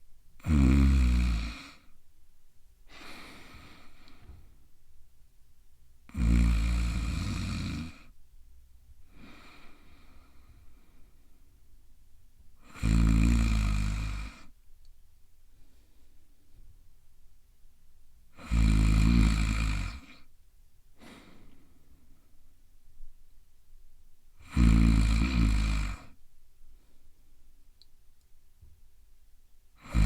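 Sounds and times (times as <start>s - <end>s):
person snoring loudly: 0.4s - 1.9s, 6.1s - 8.1s, 12.6s - 14.5s, 18.4s - 20.2s, 24.4s - 26.2s, 29.8s - 30.0s.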